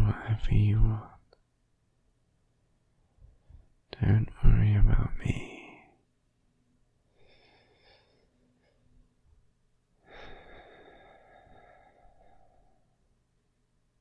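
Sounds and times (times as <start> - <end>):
man breathing softly: 7.0 - 13.1.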